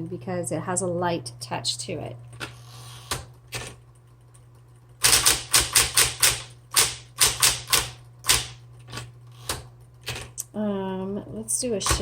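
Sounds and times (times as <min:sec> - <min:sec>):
typewriter motor hum: 0:02.3 - 0:10.4
typewriter key strikes: 0:05.0 - 0:08.6.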